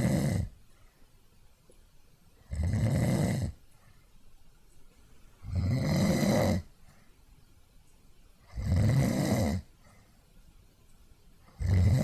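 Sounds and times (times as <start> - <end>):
loud low pulsing snore: 0.0 - 0.6, 2.5 - 3.6, 5.4 - 6.7, 8.5 - 9.7, 11.5 - 12.0.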